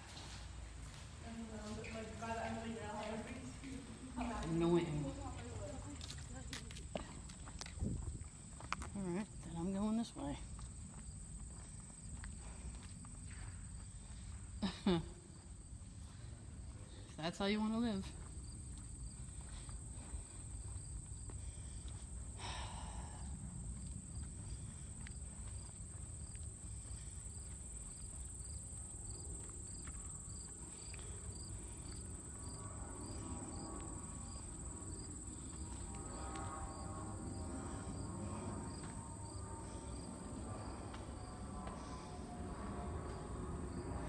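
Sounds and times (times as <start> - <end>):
insects chirping: 2.2 - 44.0.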